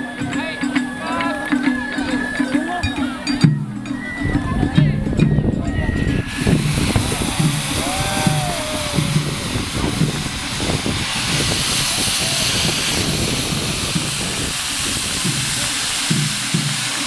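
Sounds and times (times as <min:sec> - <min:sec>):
taiko drum beats: 0:00.0 - 0:17.0
firework spraying with rushing hiss: 0:05.9 - 0:17.0.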